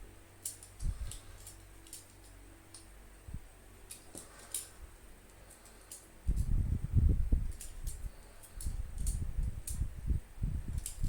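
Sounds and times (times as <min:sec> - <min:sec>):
clicks and snips of wire stripping: 0:00.4 - 0:02.9, 0:03.9 - 0:06.5, 0:07.4 - 0:09.9, 0:10.7 - 0:11.0.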